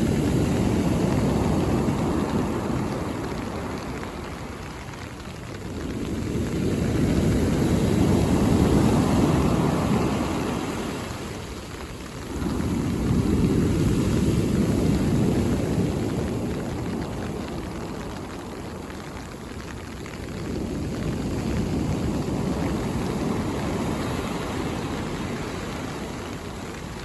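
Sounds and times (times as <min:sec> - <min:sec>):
waves breaking on shore: 0:00.0 - 0:27.0.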